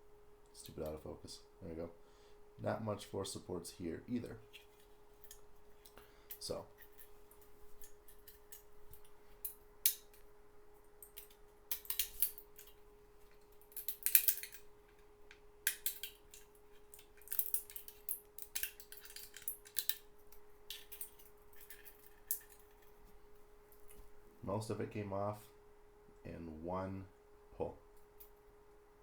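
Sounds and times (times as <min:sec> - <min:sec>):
faint hum: 0:00.0 - 0:29.0
resin supports cracking: 0:11.0 - 0:23.0.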